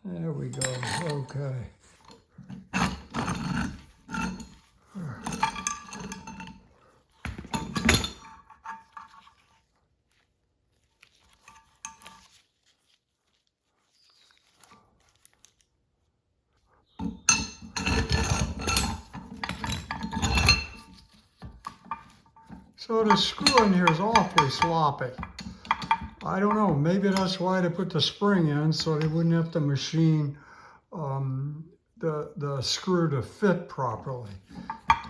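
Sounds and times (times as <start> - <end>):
metal parts clanking: 0.5 - 6.6, 7.3 - 8.8, 17.0 - 21.0, 21.7 - 26.4, 34.4 - 35.0.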